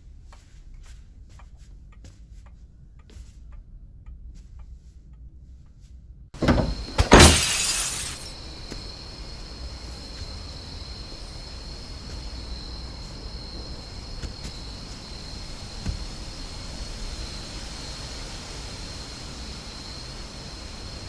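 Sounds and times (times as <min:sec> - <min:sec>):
faint ticks: 0:00.2 - 0:06.0
soft thud: 0:06.4 - 0:08.3
insects chirring: 0:06.4 - 0:21.0.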